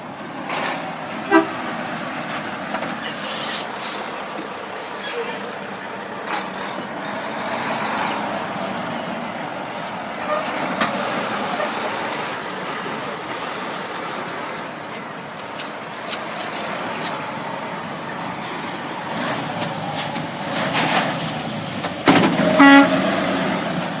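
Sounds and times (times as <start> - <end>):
road traffic rumbling: 0.0 - 24.0
truck horn blast: 1.2 - 1.7, 22.4 - 23.5.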